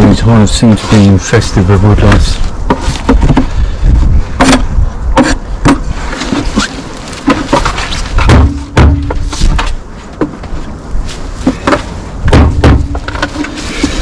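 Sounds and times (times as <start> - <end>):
heavy thumps and knocks: 2.1 - 6.4, 7.2 - 10.6, 11.4 - 14.0.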